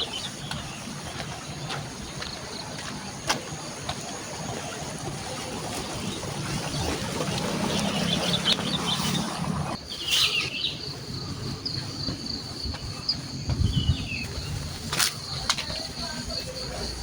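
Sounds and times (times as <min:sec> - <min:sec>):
broad rumbling with low hum: 0:00.0 - 0:09.9.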